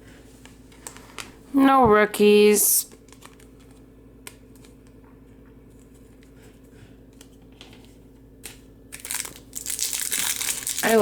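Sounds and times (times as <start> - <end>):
card pack wrapper crinkling: 2.9 - 4.8, 8.5 - 11.0.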